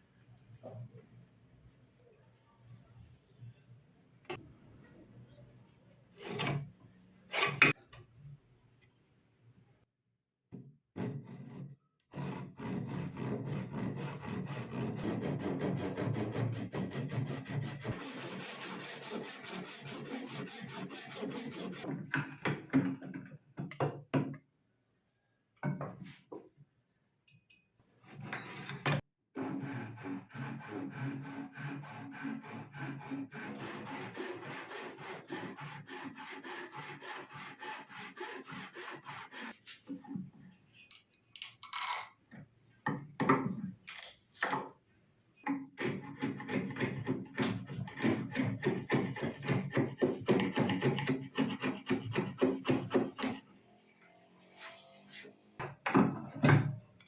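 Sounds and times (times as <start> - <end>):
hand tool scraping wood: 11.3 - 21.9, 28.1 - 40.0.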